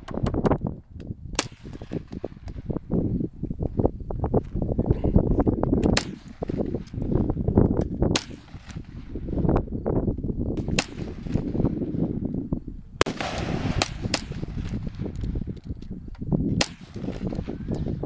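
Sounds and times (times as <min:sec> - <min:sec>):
steady low rumble: 0:00.0 - 0:18.0
sharp loud gunshots: 0:01.4 - 0:02.2, 0:05.8 - 0:06.8, 0:08.1 - 0:09.1, 0:10.6 - 0:11.7, 0:13.0 - 0:15.1, 0:16.6 - 0:17.6
faint distant gunshots: 0:08.1 - 0:09.2, 0:13.0 - 0:15.1.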